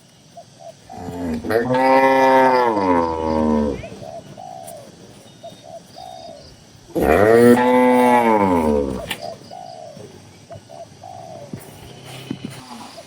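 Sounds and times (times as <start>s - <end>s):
cow mooing: 1.0s - 3.9s, 7.0s - 9.1s.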